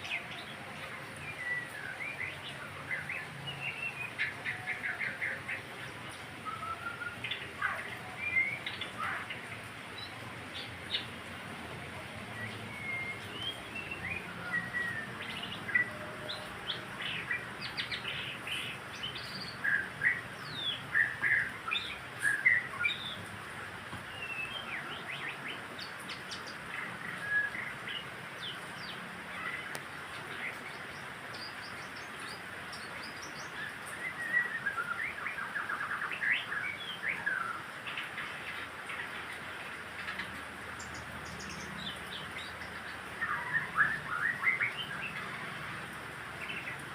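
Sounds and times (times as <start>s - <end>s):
songbird whistling and chirping: 1.2s - 5.4s, 6.4s - 9.2s, 12.4s - 16.4s, 19.0s - 23.2s, 24.1s - 29.6s, 30.3s - 37.7s, 40.8s - 45.3s.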